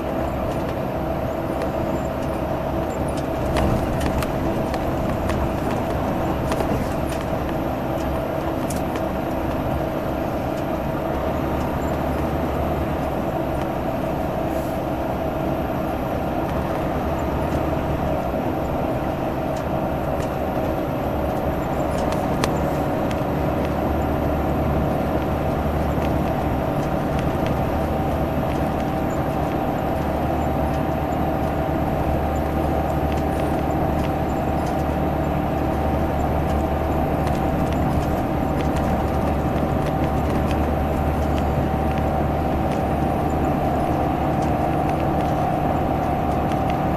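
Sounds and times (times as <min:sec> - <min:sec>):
bus engine droning: 0:00.0 - 0:46.9.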